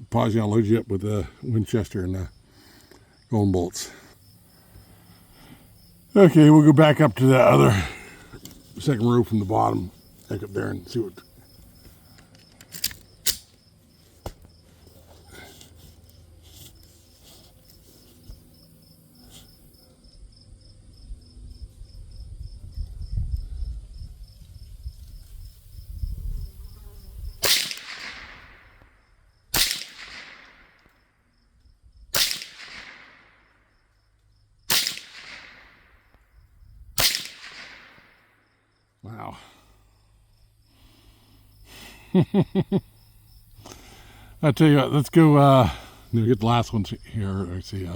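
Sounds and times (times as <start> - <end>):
rifle shots with echo: 27.4 - 28.8, 29.5 - 30.8, 32.1 - 33.4, 34.7 - 36.0, 37.0 - 38.2.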